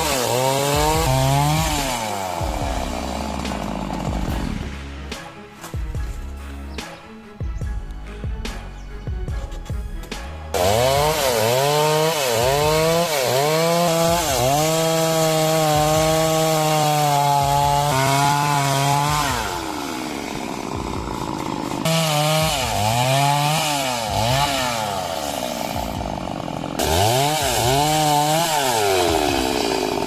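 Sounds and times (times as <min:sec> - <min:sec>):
chainsaw cutting wood: 0:00.0 - 0:06.9, 0:09.4 - 0:30.0.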